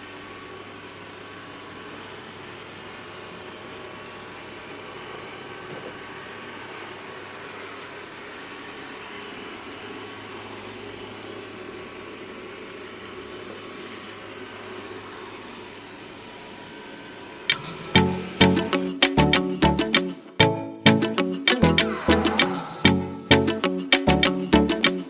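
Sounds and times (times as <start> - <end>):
robot vacuum cleaner hum: 0.0 - 19.1.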